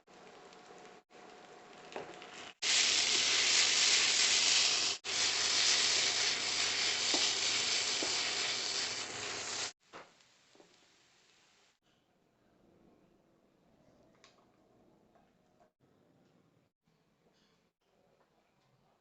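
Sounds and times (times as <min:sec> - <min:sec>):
food sizzling in frying pan: 0:00.1 - 0:09.8.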